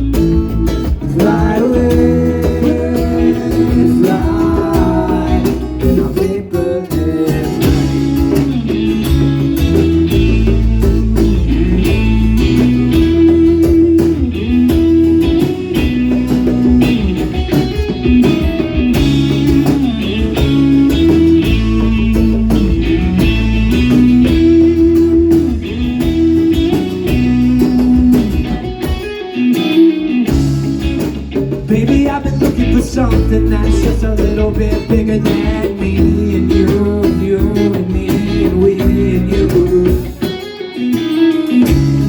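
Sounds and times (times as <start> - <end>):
melodic guitar figure: 0.0 - 42.0
rock band playing: 0.0 - 42.0.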